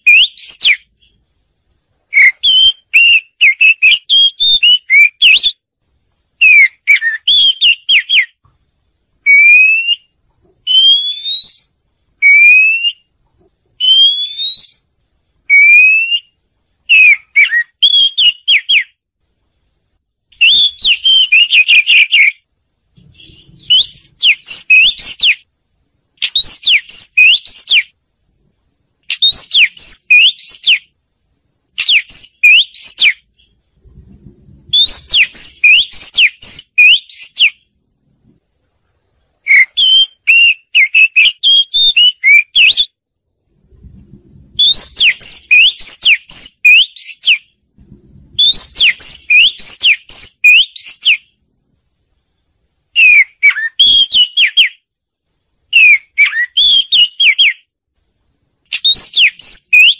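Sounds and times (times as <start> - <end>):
bird singing whistled notes: 0.0 - 1.2, 2.1 - 5.7, 6.4 - 8.4, 9.2 - 13.1, 13.8 - 14.8, 15.4 - 19.0, 20.3 - 22.4, 23.0 - 25.5, 26.2 - 28.0, 29.0 - 30.9, 31.8 - 33.6, 34.7 - 37.7, 39.4 - 43.0, 44.6 - 47.6, 48.4 - 51.4, 53.0 - 54.9, 55.7 - 57.7, 58.7 - 59.9.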